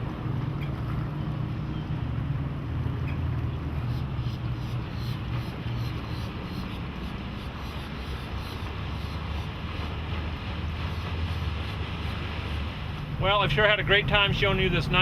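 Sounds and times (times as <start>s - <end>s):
outboard motors droning: 0.0s - 15.0s.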